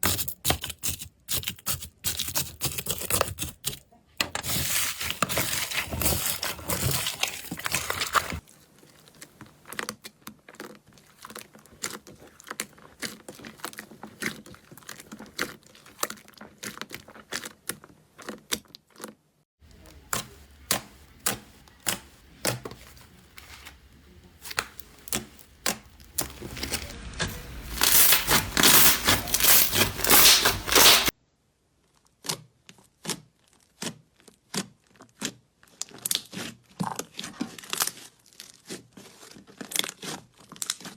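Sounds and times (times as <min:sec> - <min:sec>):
slime crackling and popping: 0:20.0 - 0:31.1.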